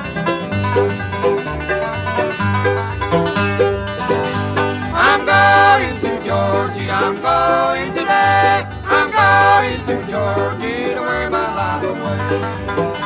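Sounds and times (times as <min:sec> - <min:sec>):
banjo: 0:00.0 - 0:13.0
guitar: 0:00.0 - 0:13.0
mandolin: 0:00.0 - 0:13.0
upright bass walking pulse: 0:02.6 - 0:13.0.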